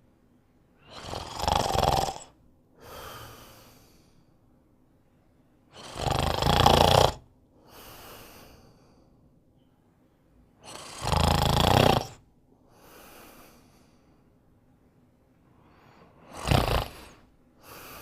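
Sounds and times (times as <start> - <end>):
deep snoring: 0.9 - 2.4, 5.8 - 7.3, 10.6 - 12.2, 16.2 - 18.0
soft breath: 2.8 - 5.3, 7.6 - 10.9, 12.6 - 14.6, 15.3 - 18.0.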